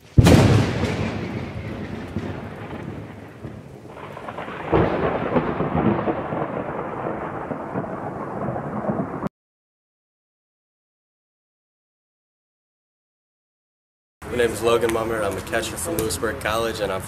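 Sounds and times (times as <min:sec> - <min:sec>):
rain: 0:00.0 - 0:09.3
thunder clap and rumble: 0:00.0 - 0:09.3.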